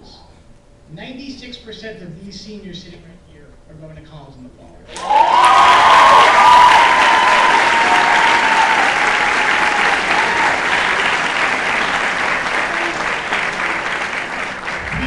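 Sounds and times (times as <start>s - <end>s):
audience applauding: 4.9s - 15.0s
audience cheering: 4.9s - 15.0s.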